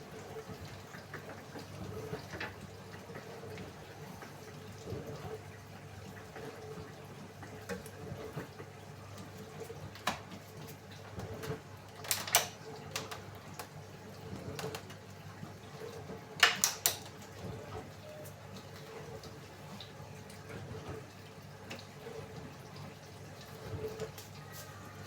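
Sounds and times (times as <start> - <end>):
washing machine draining hum: 0.0 - 25.0
water trickling and dripping: 0.0 - 25.0.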